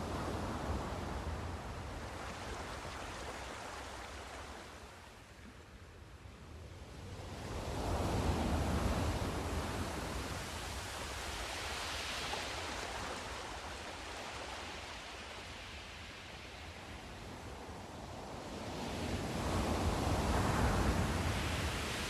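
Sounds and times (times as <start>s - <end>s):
surf washing in with a hiss: 7.3s - 22.0s.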